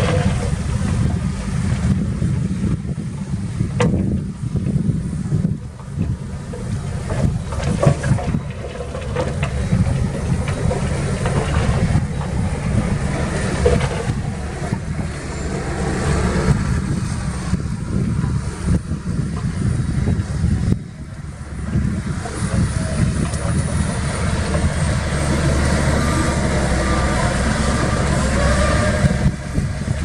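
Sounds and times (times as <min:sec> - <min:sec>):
clanks and rattles: 0:00.0 - 0:02.0, 0:05.4 - 0:17.2, 0:21.5 - 0:30.0
heavy diesel machinery rumbling: 0:00.0 - 0:30.0.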